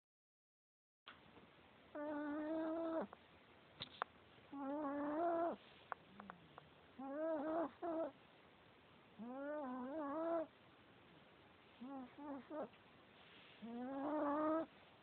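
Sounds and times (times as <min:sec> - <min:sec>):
dog snoring: 0:01.9 - 0:03.1, 0:04.5 - 0:05.6, 0:06.2 - 0:08.2, 0:09.2 - 0:10.5, 0:11.8 - 0:12.7, 0:13.6 - 0:14.7.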